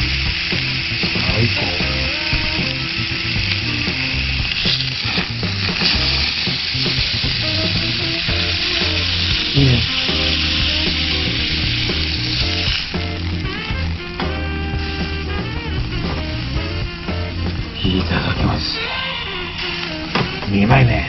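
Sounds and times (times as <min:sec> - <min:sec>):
meat sizzling on a grill plate: 0:00.0 - 0:20.9
background music with bass: 0:00.0 - 0:21.0.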